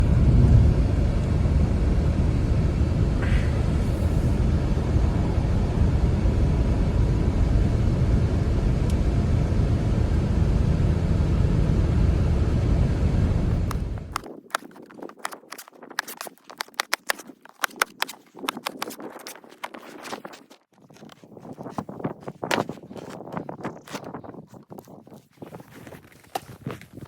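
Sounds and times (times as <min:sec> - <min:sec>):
steady low rumble: 0:00.0 - 0:14.2.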